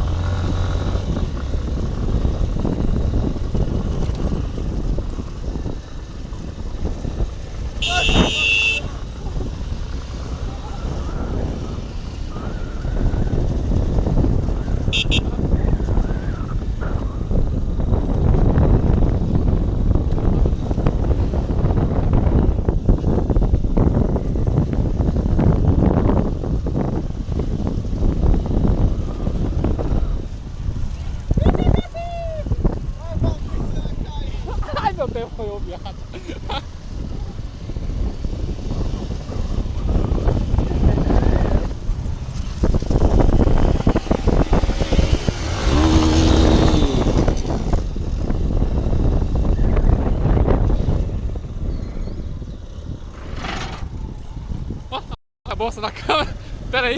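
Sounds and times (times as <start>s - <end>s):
motorcycle engine rumble: 0.0s - 56.9s
wind buffeting microphone: 0.0s - 56.9s
horn toots: 7.6s - 9.2s, 14.8s - 15.7s.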